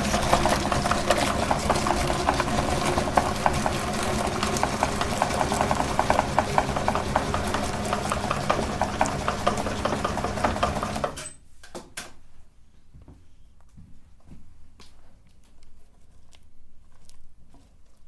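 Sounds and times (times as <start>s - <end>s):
meat grinder motor humming: 0.0s - 11.2s.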